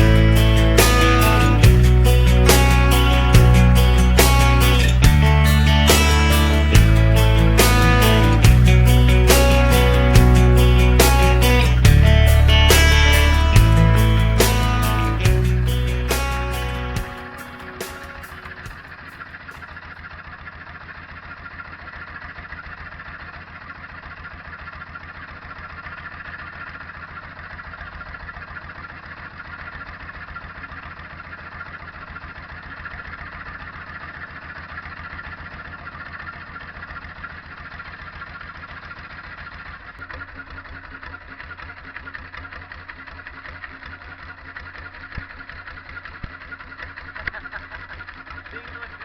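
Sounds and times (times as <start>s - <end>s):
boat engine running: 0.0s - 49.0s.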